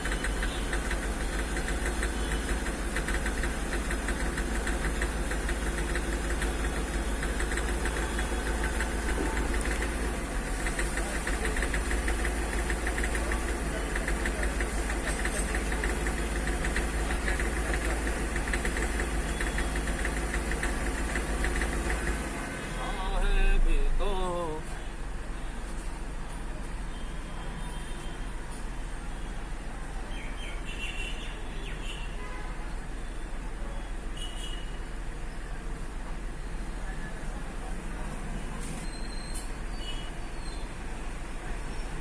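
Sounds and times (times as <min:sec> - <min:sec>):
diesel engine knocking at idle: 0:00.0 - 0:22.5.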